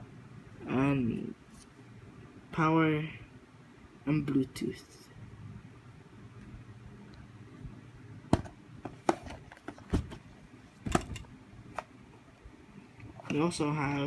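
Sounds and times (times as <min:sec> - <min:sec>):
faint low hum: 0:00.0 - 0:14.0
knocks and clicks of packaging: 0:08.3 - 0:11.9.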